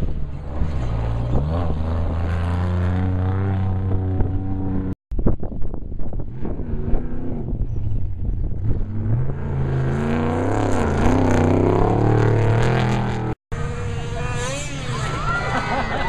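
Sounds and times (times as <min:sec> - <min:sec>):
race vehicle engine revving: 0:00.0 - 0:05.0, 0:08.5 - 0:16.0.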